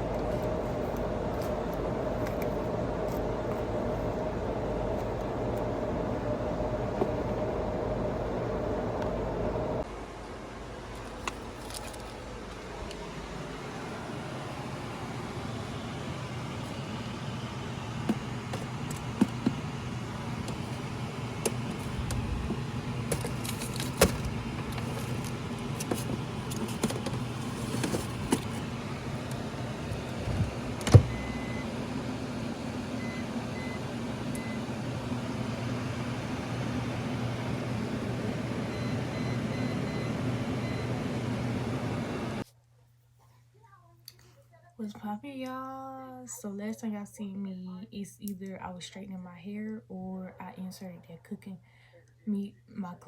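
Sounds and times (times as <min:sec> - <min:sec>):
vehicle interior hum: 0:00.0 - 0:42.4.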